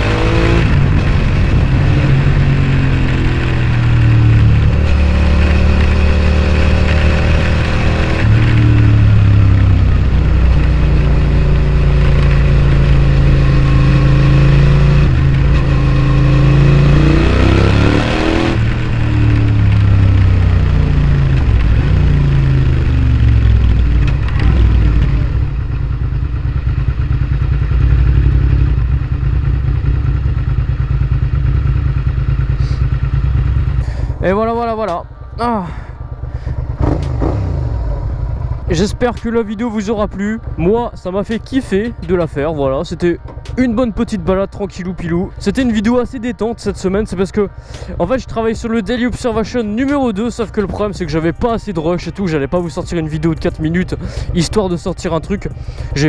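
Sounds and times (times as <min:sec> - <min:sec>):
motorcycle engine revving through gears: 0:00.0 - 0:40.6, 0:43.2 - 0:43.7, 0:48.7 - 0:56.0.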